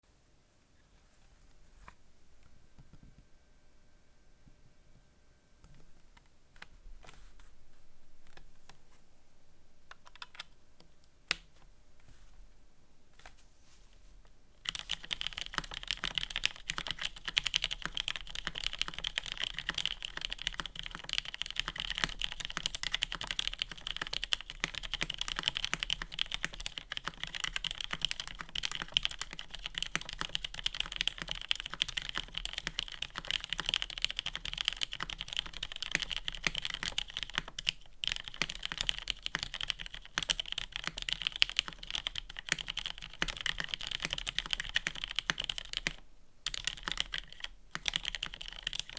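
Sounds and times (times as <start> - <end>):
fast mechanical keyboard typing: 14.7 - 48.9.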